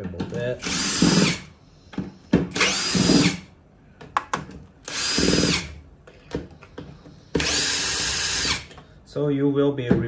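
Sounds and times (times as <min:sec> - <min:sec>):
power drill motor whining: 0:00.6 - 0:01.4, 0:02.5 - 0:03.5, 0:04.9 - 0:05.7, 0:07.4 - 0:08.8.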